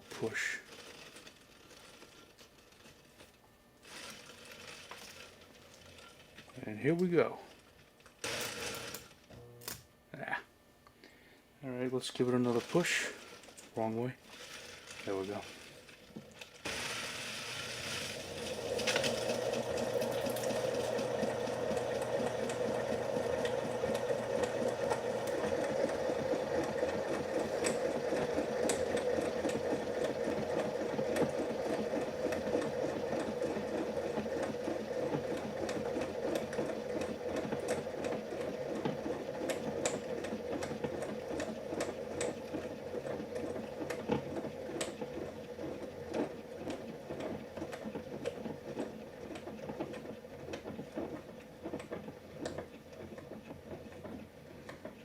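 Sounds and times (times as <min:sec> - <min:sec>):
ceiling fan motor rattling: 0:11.6 - 0:55.0.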